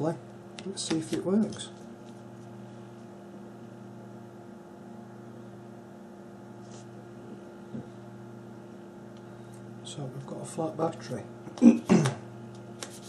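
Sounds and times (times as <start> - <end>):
low electrical hum: 0.0 - 13.0.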